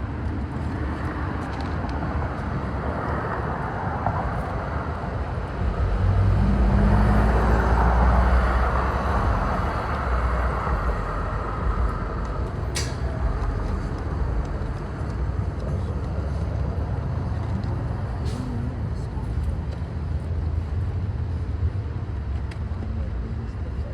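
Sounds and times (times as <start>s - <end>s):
vehicle engine rumble: 0.0s - 23.9s.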